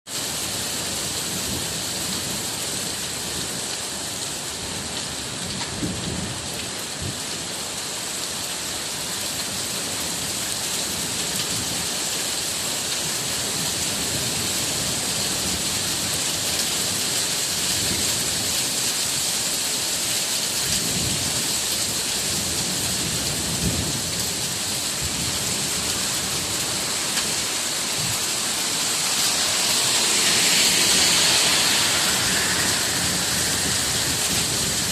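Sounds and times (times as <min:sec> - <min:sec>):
steady rain hissing: 0:00.1 - 0:34.9.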